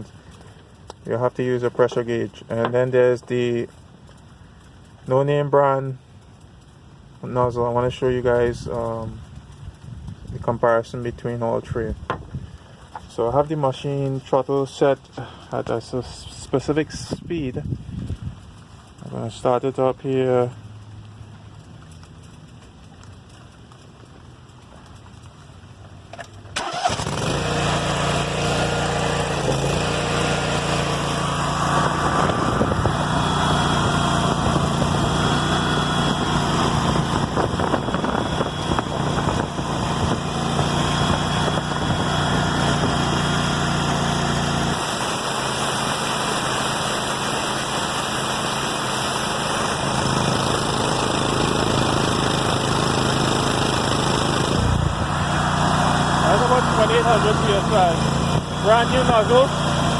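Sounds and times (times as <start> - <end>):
pressure washer engine running: 26.6 - 59.9
pressure washer spray hiss: 26.6 - 59.9.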